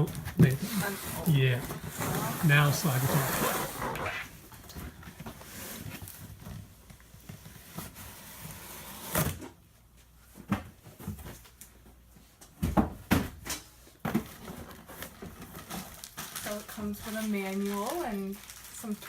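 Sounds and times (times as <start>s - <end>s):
cardboard scraping rustle: 0.1s - 4.4s.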